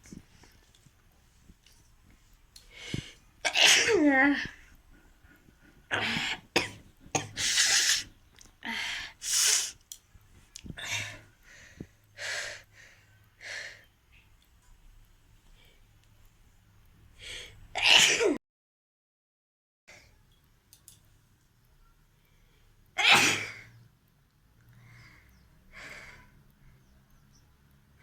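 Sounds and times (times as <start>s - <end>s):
person sneezing: 5.9s - 8.1s, 17.8s - 18.4s, 23.0s - 23.6s.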